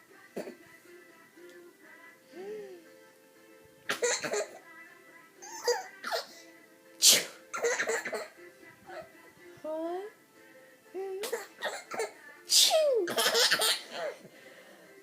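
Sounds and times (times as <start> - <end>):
faint music: 0.0 - 15.0
baby laughing: 5.4 - 6.3, 12.8 - 14.2
loud sneeze: 7.0 - 7.9, 12.5 - 14.1.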